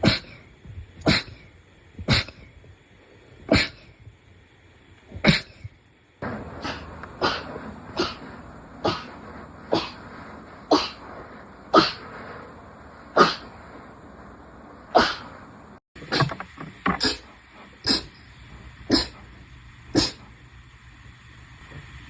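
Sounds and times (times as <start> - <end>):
short sharp sneezes: 6.6 - 10.0, 11.7 - 12.1, 18.9 - 19.2, 20.0 - 20.3.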